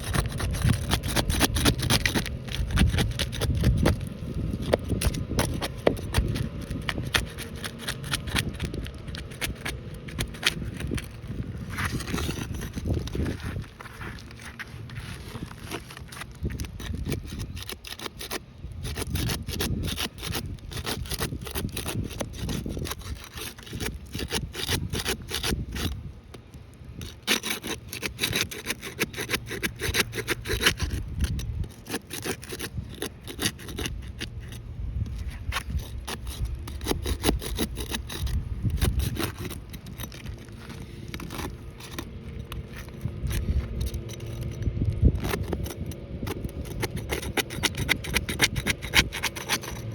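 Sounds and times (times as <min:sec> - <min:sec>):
scraping on asphalt roof shingles: 0:00.0 - 0:49.9
low rumble: 0:38.0 - 0:48.3.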